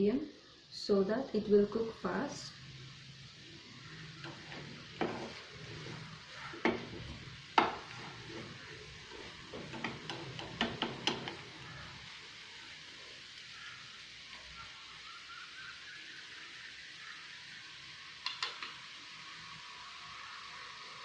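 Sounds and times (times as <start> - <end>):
low steady sizzle: 0.0 - 21.0
utensil knocking and scraping pan: 4.1 - 11.5.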